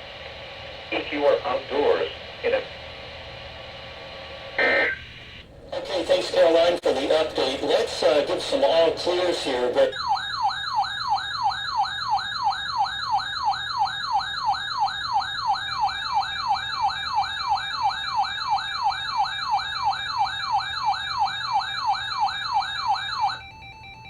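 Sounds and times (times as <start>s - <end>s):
electronic siren-like yelp: 4.6s - 5.1s, 9.2s - 24.0s.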